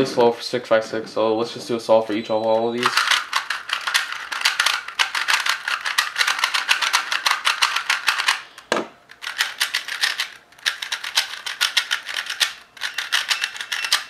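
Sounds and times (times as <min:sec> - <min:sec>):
puzzle cube layers clacking: 0:02.5 - 0:08.5, 0:09.1 - 0:14.0.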